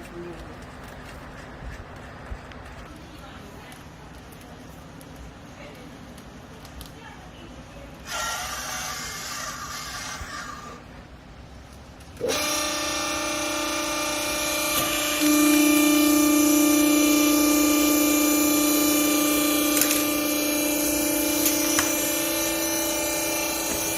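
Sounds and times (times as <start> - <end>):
electric motor and hydraulic pump humming: 7.8 - 23.9.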